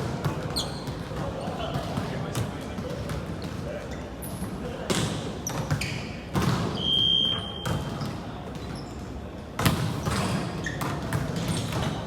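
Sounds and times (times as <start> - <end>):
ball thuds in echoing hall: 4.8 - 6.9, 9.5 - 12.0
referee's whistle blast: 6.8 - 7.8.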